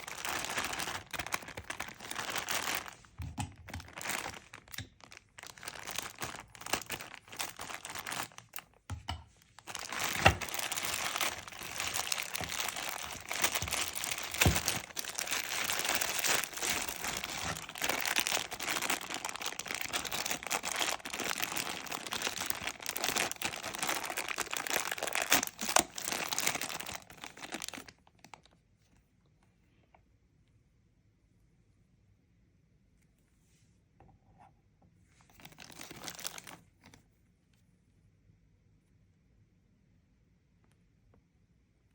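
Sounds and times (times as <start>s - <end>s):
plastic wrapping crinkling: 0.0s - 28.6s, 35.3s - 36.9s.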